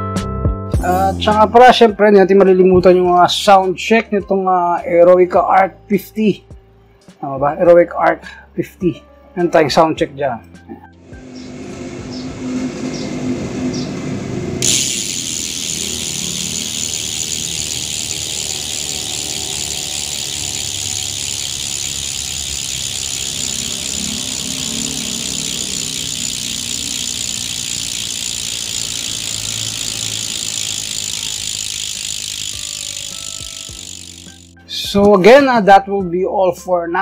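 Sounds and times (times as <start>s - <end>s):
bicycle freehub buzzing: 11.0s - 34.7s.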